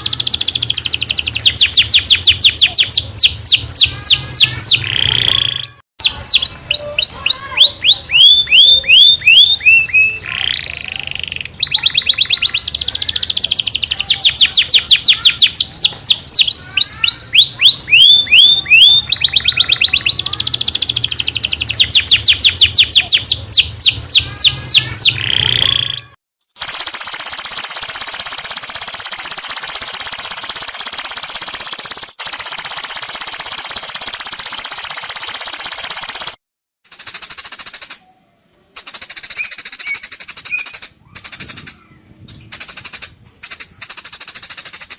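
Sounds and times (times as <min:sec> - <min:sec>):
songbird whistles: 0:00.1 - 0:26.1, 0:39.2 - 0:41.8.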